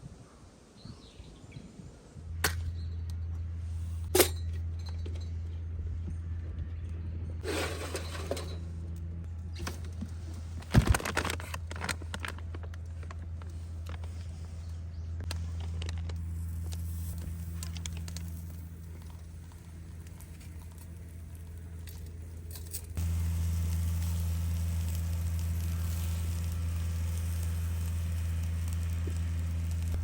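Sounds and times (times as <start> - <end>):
low rumble: 8.4 - 30.0
charcoal crackles: 9.6 - 30.0
food sizzling over charcoal: 16.1 - 30.0.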